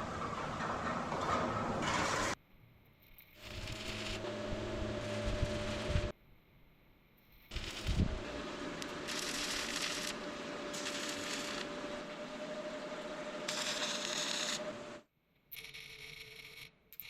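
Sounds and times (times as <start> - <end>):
power tool motor whine: 3.4 - 6.1, 7.5 - 15.0
hissing grinding noise: 7.5 - 15.0.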